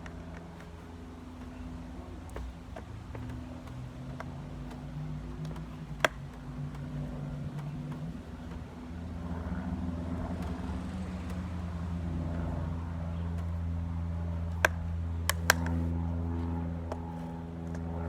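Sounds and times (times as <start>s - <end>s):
low mechanical hum: 0.0s - 18.0s.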